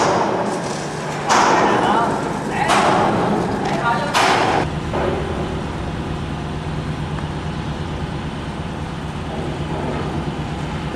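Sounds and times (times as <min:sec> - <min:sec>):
engine low drone: 0:04.6 - 0:10.9.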